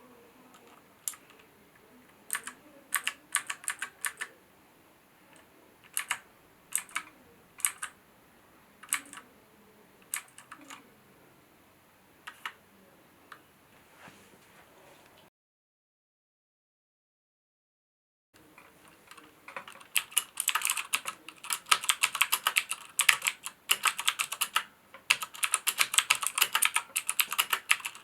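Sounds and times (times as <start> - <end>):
mechanical keyboard typing: 0.5 - 1.5, 2.3 - 4.4, 5.3 - 8.0, 8.8 - 9.2, 10.0 - 10.8, 12.2 - 12.6, 18.6 - 28.0.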